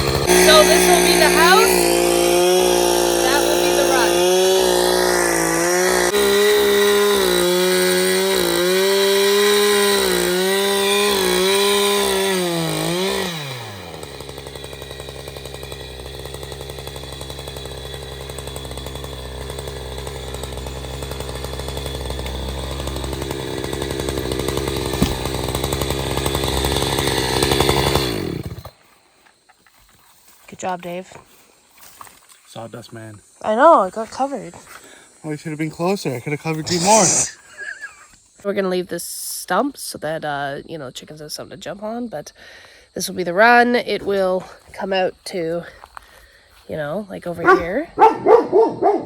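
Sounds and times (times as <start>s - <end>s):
chainsaw cutting through wood: 0.0s - 28.8s, 33.2s - 38.2s, 47.3s - 49.0s.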